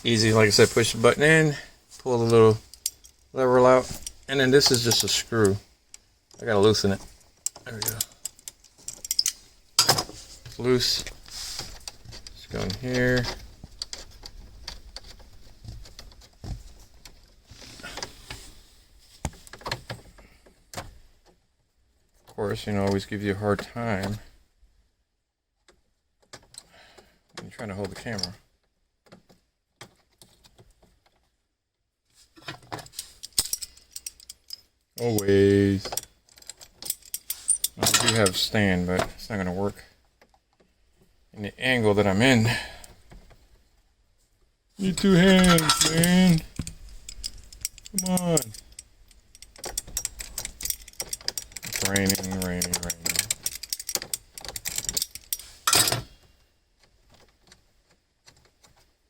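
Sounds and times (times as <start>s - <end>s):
scraping rustle: 0.0s - 2.8s, 6.4s - 20.2s, 32.1s - 41.2s, 44.2s - 59.0s
plastic and metal parts rattling: 6.3s - 18.4s, 32.3s - 39.4s, 44.8s - 59.0s.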